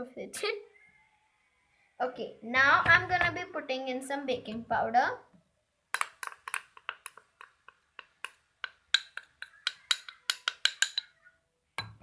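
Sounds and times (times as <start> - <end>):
spoon clinking against bowl: 8.9 - 11.2.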